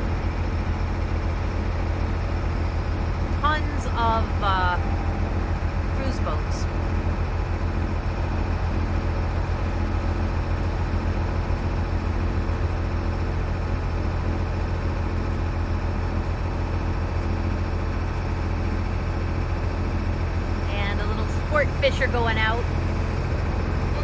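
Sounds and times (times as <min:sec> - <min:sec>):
boat engine droning: 0:00.0 - 0:24.0.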